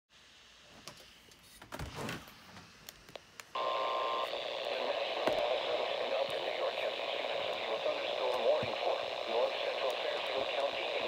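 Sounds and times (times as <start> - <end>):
radio static hiss: 3.5 - 11.0.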